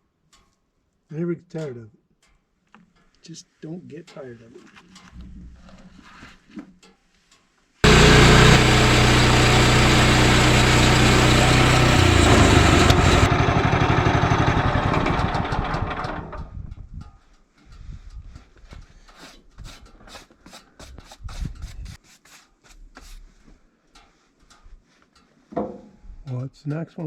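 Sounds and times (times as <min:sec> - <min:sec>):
small petrol engine running: 0:07.8 - 0:16.5.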